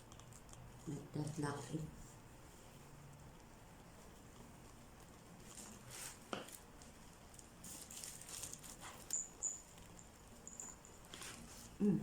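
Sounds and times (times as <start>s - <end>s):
handbag rustling: 5.3s - 11.7s.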